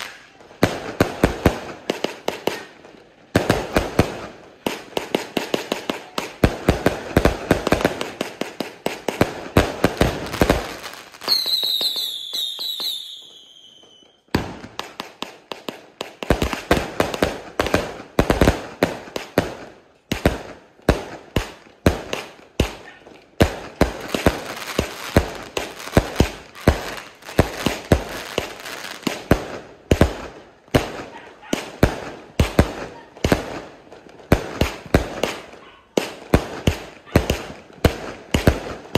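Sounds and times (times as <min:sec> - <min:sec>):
falling firework whistles: 0:11.2 - 0:14.3.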